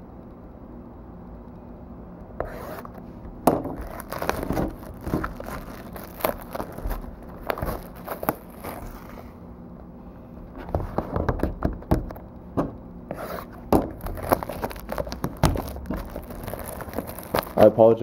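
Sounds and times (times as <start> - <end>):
cardboard and wrapper crinkling: 3.6 - 9.4, 13.2 - 17.8.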